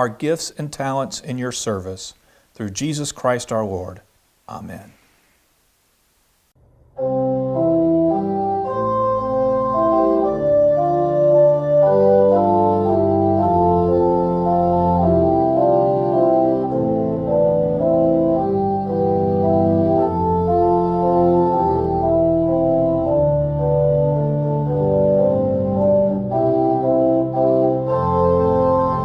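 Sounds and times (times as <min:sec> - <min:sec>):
organ playing sustained chords: 0:07.0 - 0:29.0.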